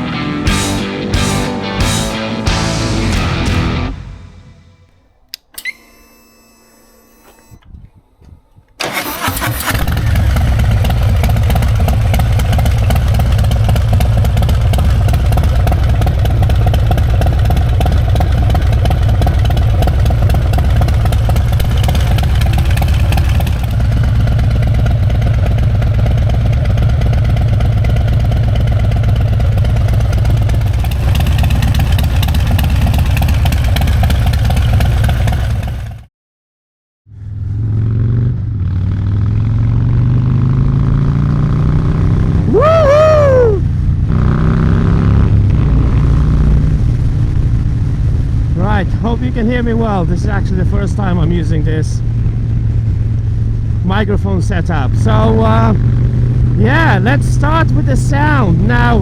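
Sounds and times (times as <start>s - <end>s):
motorcycle engine starting and idling: 0.0s - 36.1s.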